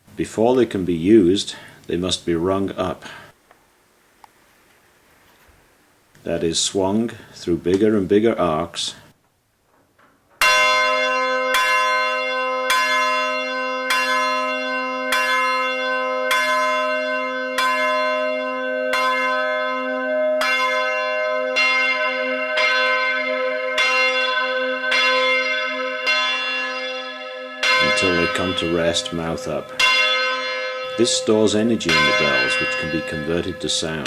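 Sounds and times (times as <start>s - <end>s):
tower bell ringing: 10.4s - 34.0s.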